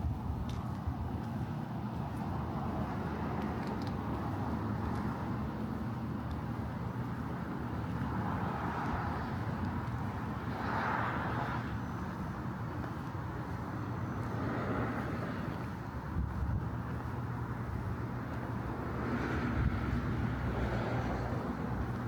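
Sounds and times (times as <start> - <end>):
distant traffic hum: 0.0 - 22.0
vehicle passing: 8.0 - 12.5, 13.2 - 22.0.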